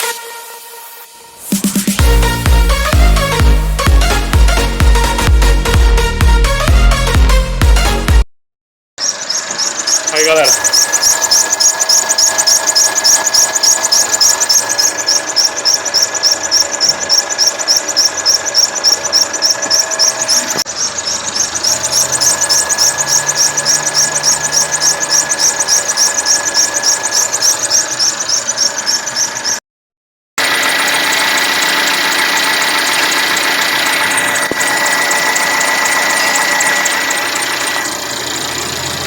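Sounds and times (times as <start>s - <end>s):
car engine running: 1.5s - 8.2s, 9.1s - 29.5s, 30.4s - 39.0s
high-pitched belt chirping: 9.0s - 29.6s, 30.6s - 39.0s.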